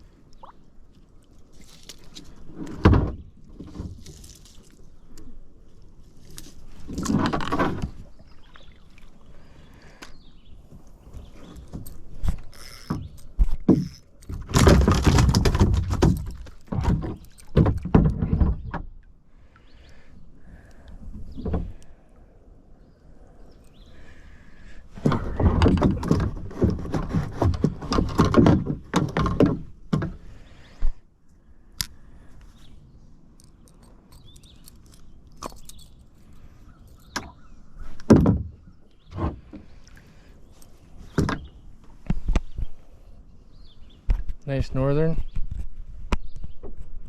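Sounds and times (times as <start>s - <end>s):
fish thrashing against boat: 11.4s - 18.8s, 25.0s - 30.3s.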